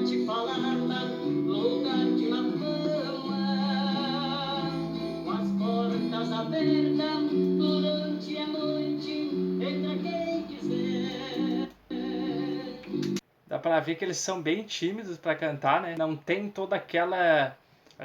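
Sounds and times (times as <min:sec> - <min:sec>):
two men singing in harmony: 0:00.0 - 0:13.1
plucked guitar: 0:00.0 - 0:13.2.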